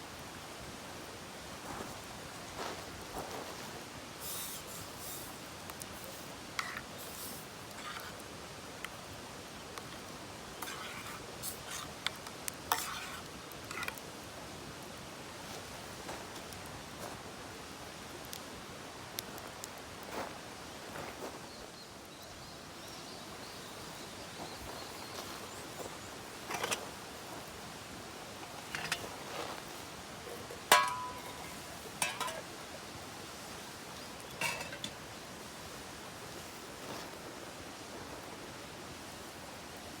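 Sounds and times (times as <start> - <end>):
steady background hiss: 0.0 - 40.0
utensils clinking on cookware: 12.7 - 14.0, 26.5 - 26.8, 28.4 - 29.2, 30.3 - 32.5, 34.3 - 35.0.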